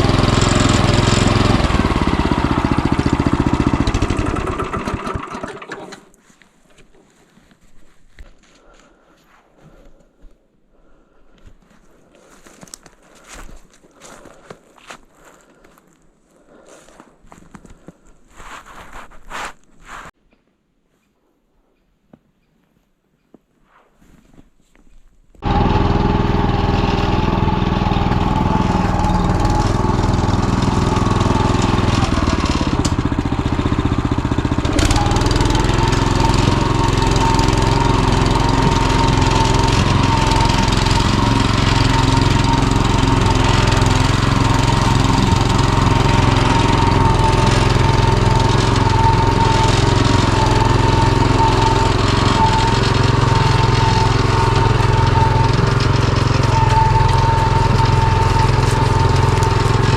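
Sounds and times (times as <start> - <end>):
small single-cylinder engine running: 0.0 - 6.2, 25.4 - 59.9.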